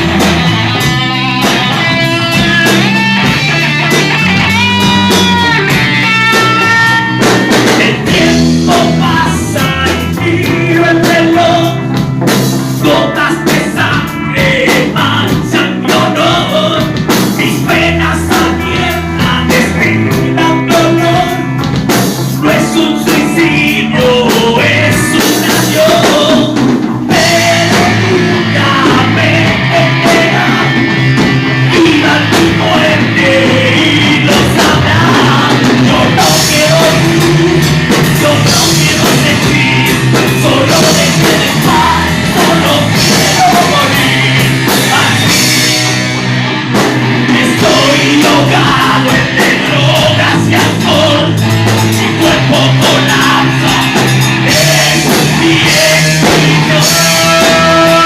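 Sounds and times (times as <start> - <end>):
person singing lead vocal: 0.0 - 58.0
rock band playing live: 0.0 - 58.0.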